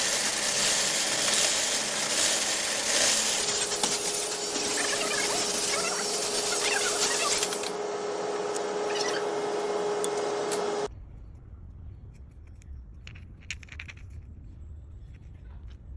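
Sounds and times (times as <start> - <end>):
workshop machine humming: 0.0 - 10.9.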